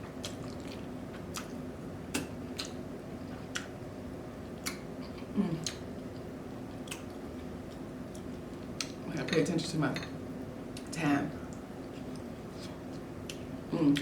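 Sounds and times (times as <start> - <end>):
chewing with mouth clicks: 0.2 - 3.8, 4.6 - 9.0
person humming mm: 5.3 - 5.8.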